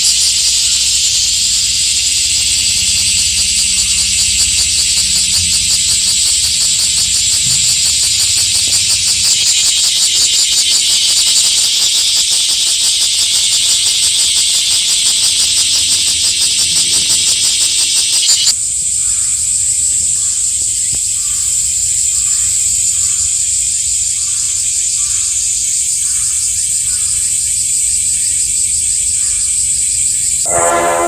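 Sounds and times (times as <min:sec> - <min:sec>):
cicadas droning: 0:00.0 - 0:31.0
faint pulsed insect call: 0:00.0 - 0:31.0
brass music: 0:30.5 - 0:31.0.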